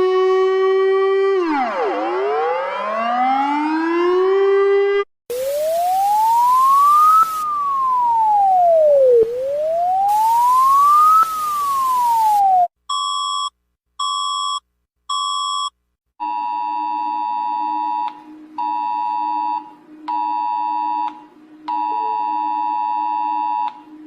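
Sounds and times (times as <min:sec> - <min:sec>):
falling siren tone: 0:00.0 - 0:12.7
low hum: 0:05.3 - 0:12.7.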